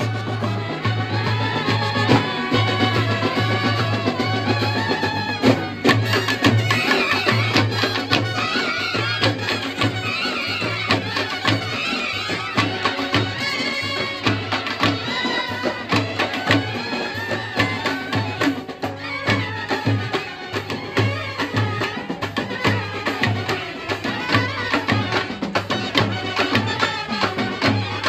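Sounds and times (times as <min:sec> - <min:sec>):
double-reed horn melody: 0:00.0 - 0:12.6, 0:19.3 - 0:28.0
brass band playing: 0:00.0 - 0:28.0
drums keeping a steady beat: 0:00.0 - 0:28.0.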